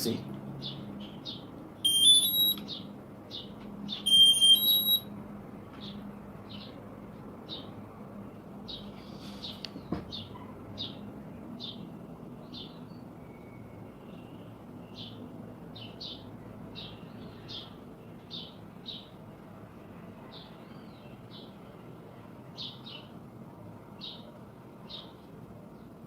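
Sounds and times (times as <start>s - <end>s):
small bird chirping: 0.6s - 5.0s.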